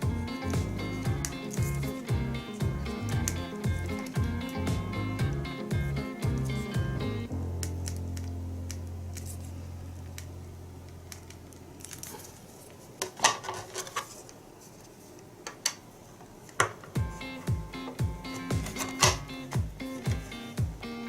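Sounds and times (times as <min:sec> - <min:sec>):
music: 0:00.0 - 0:09.6, 0:17.0 - 0:21.0
plastic crinkling: 0:10.9 - 0:15.3.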